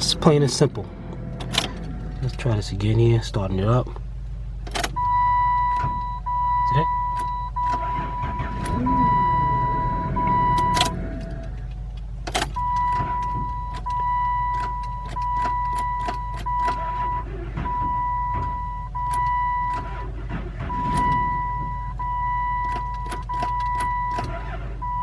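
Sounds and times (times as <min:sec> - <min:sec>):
warning tone beeps: 0:05.0 - 0:11.5, 0:12.6 - 0:19.8, 0:20.7 - 0:25.0.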